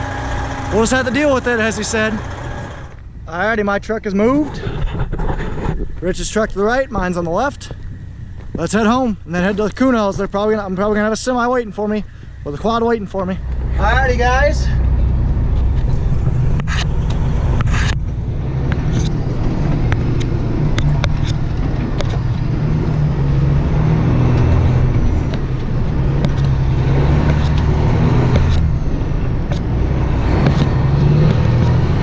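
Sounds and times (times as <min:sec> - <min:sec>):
truck diesel engine accelerating: 0:00.0 - 0:03.2, 0:12.1 - 0:32.0.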